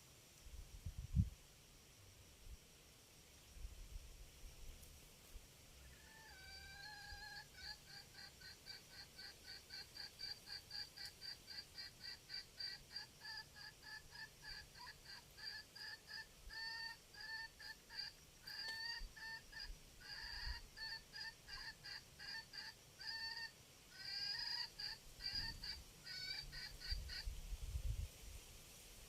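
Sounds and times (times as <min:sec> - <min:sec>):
fowl clucking rapidly: 0:05.9 - 0:27.3.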